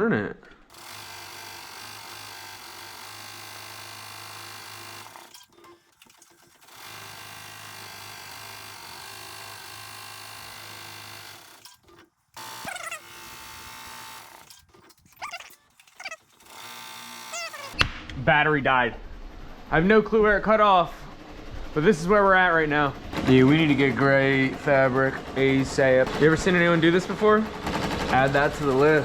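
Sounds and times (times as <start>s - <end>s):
embroidery machine humming: 0.7s - 17.8s, 19.0s - 29.0s.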